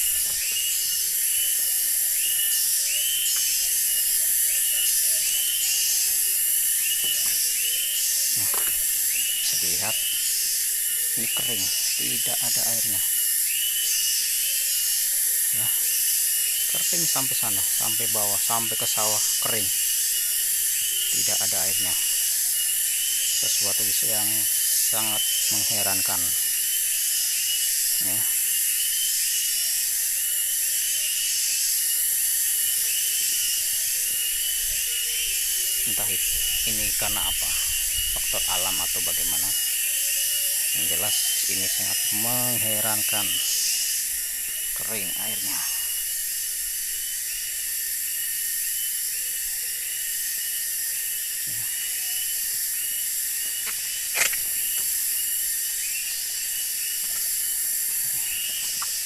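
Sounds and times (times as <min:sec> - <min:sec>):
cicadas buzzing: 0:00.0 - 0:59.0
sharp click: 0:53.6 - 0:54.5.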